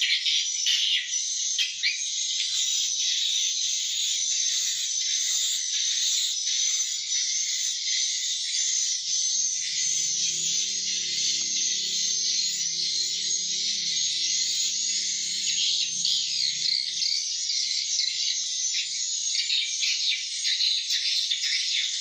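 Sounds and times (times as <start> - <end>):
quiet music: 9.7 - 17.0.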